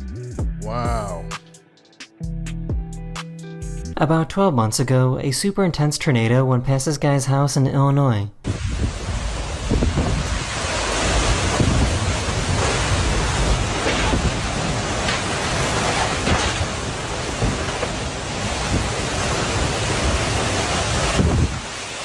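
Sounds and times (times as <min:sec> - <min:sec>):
violent wind and rain: 0:08.5 - 0:22.0.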